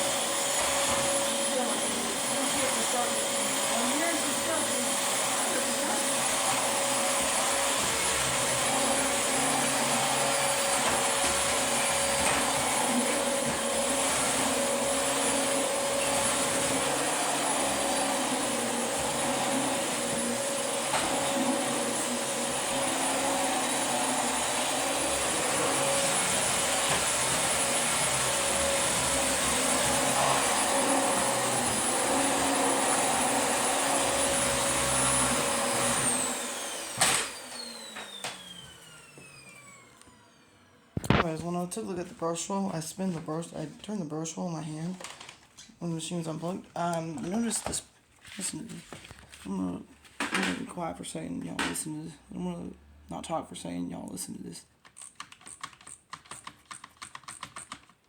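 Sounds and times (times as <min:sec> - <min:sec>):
vacuum cleaner running: 0:00.0 - 0:43.8.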